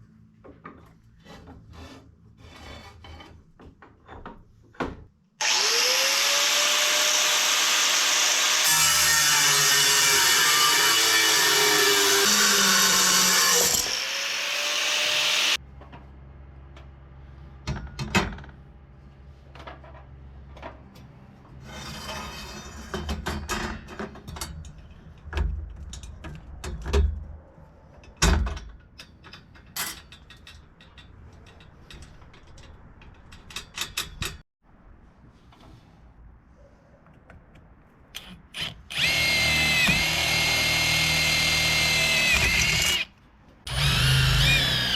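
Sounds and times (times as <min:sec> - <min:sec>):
power tool cutting steel: 0:05.4 - 0:15.6, 0:38.6 - 0:43.1, 0:43.7 - 0:44.9.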